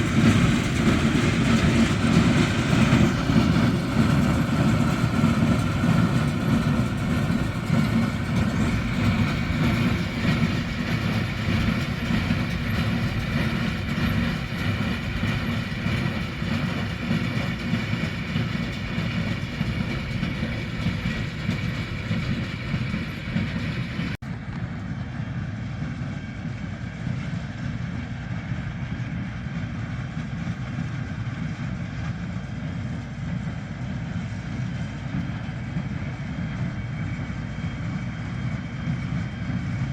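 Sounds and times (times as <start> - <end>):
hay baler clattering: 0.0 - 24.2
tractor engine running: 0.0 - 27.6, 28.5 - 39.9.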